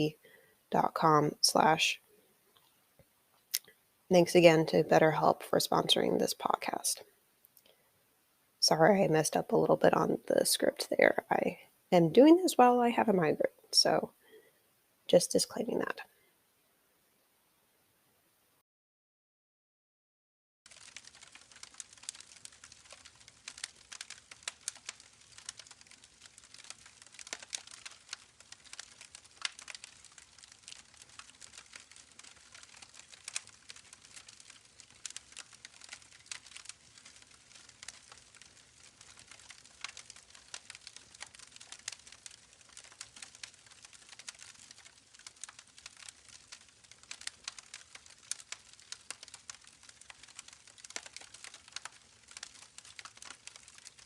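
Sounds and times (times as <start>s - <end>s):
campfire crackling: 20.7s - 54.0s.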